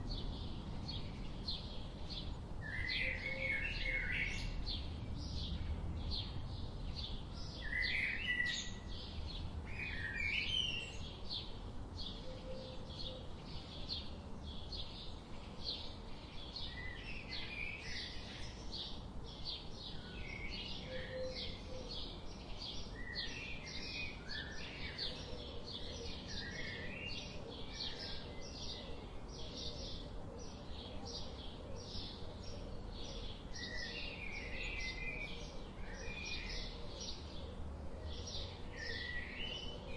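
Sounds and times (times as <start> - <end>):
small birds chirping: 0.0 - 39.9
faint low rumble: 4.4 - 7.8.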